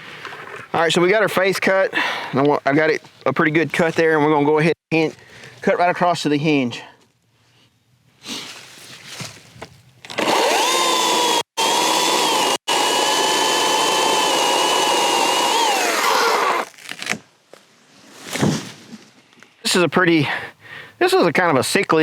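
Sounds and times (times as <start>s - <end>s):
chainsaw high whine: 10.1s - 16.7s.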